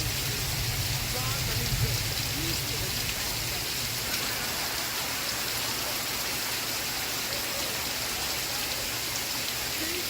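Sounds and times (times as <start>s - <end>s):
rain falling: 0.0s - 10.0s.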